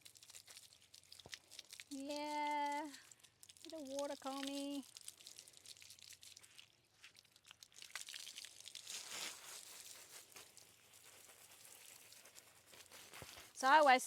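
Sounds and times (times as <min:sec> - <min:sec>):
hose water spraying: 0:03.7 - 0:04.8.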